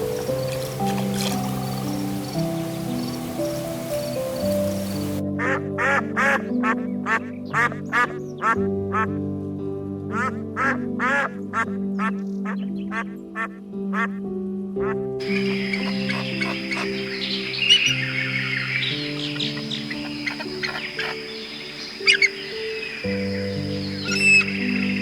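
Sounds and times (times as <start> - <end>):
soft piano and guitar music: 0.0 - 25.0
duck quacking: 5.4 - 9.1, 10.1 - 12.2, 12.9 - 14.2.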